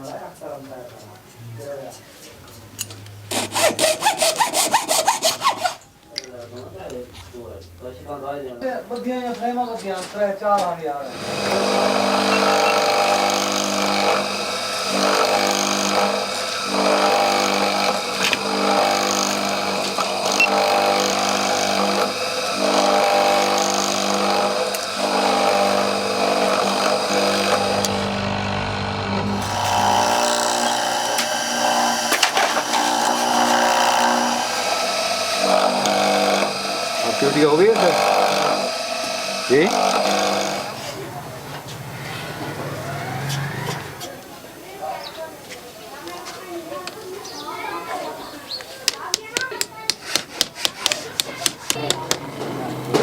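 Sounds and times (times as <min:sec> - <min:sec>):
power tool motor whining: 0:11.0 - 0:44.6, 0:50.9 - 0:53.0.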